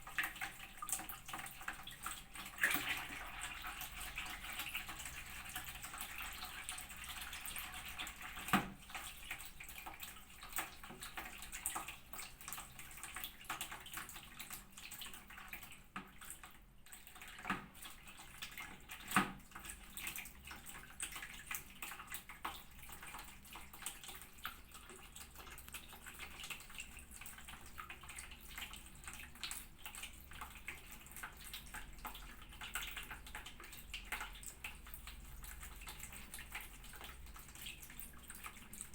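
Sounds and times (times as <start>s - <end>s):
water splashing and trickling: 0.0s - 38.9s.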